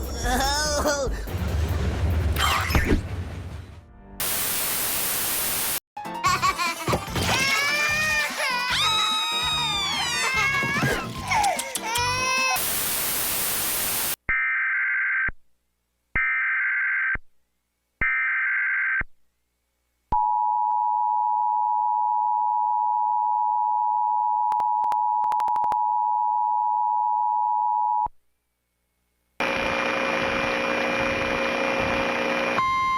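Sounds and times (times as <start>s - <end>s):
burst of static: 4.2s - 5.8s, 12.6s - 14.2s.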